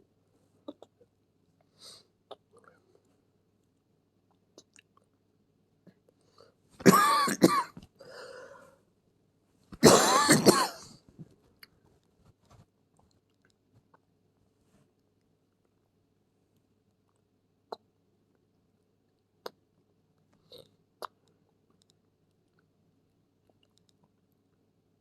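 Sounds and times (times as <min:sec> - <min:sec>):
person coughing: 0:06.8 - 0:07.8, 0:09.8 - 0:11.0
breathy sound: 0:08.0 - 0:08.8.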